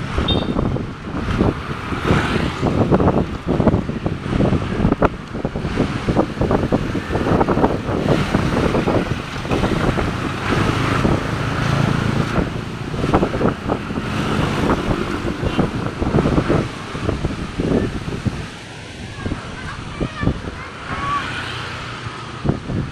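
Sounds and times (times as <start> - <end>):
wind buffeting microphone: 0.0 - 22.9.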